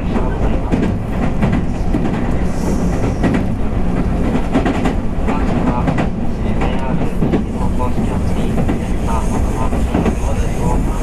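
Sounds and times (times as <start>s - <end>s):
train wheels rumbling on rails: 0.0s - 11.0s.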